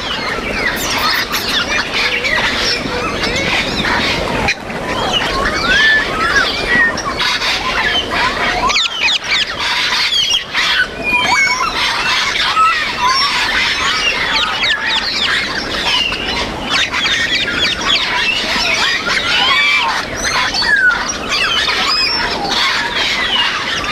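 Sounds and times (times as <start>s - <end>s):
parrots whistling and squawking: 0.6s - 2.1s.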